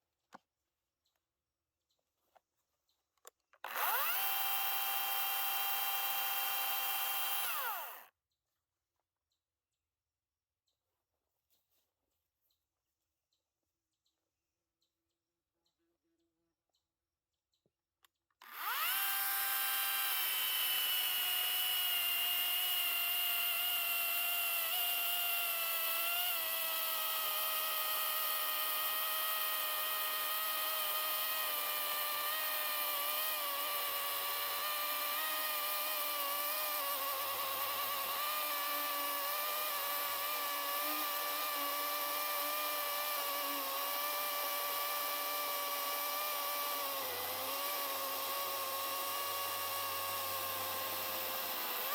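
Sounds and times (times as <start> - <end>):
electric chainsaw motor whining: 3.6 - 8.1, 18.4 - 51.9.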